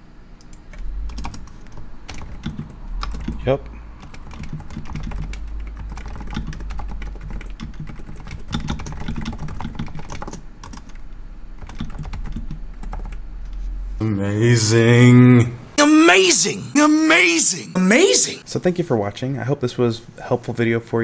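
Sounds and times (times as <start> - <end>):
muted keyboard typing: 0.4 - 14.0.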